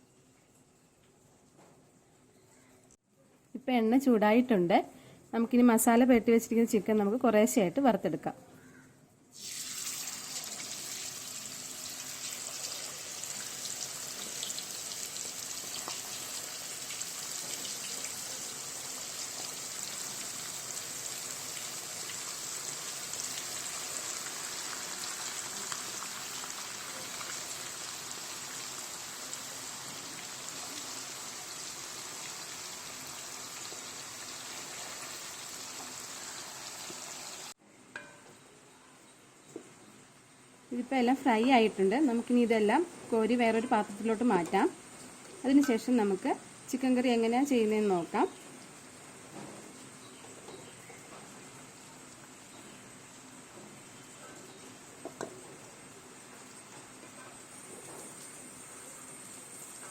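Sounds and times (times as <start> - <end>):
chicken sizzling in hot oil: 9.3 - 37.6, 50.9 - 59.9.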